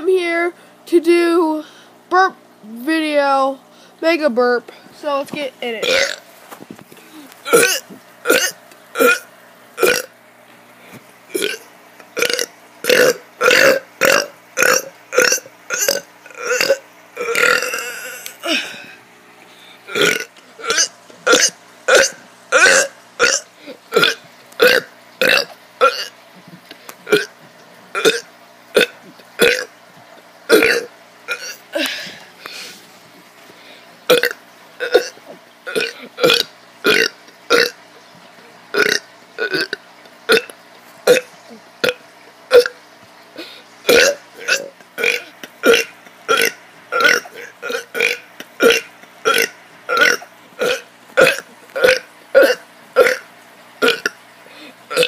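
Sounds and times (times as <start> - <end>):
child burping: 5.8 - 6.2, 7.1 - 10.1, 11.4 - 11.6, 12.2 - 19.0, 19.9 - 26.1, 27.1 - 27.3, 28.0 - 29.7, 30.5 - 32.2, 34.1 - 37.8, 38.8 - 40.5, 41.1 - 42.8, 43.9 - 53.2, 53.8 - 54.2.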